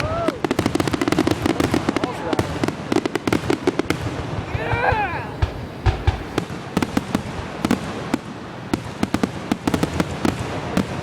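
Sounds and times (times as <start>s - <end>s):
fireworks bangs and cracks: 0.0s - 11.0s.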